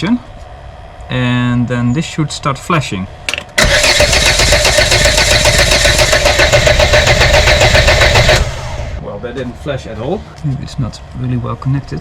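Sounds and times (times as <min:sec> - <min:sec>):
starter motor cranking engine: 0:03.6 - 0:09.0.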